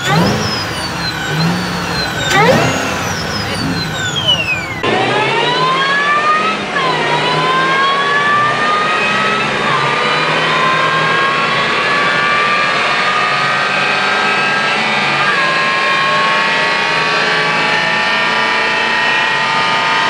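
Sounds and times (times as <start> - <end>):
car engine accelerating: 0.0 - 20.0
supercharger whine: 0.0 - 20.0.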